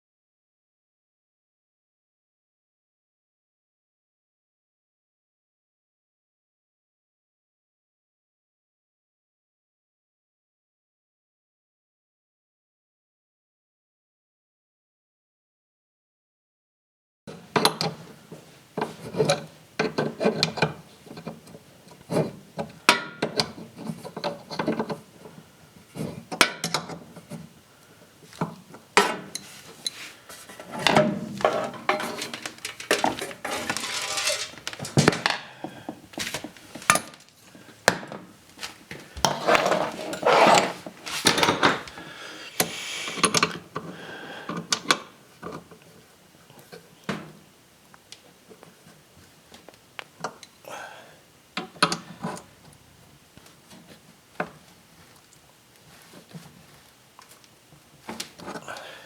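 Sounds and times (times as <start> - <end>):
scraping and rubbing: 29.0 - 35.2, 38.6 - 43.4
clanks of hard parts: 30.7 - 35.4.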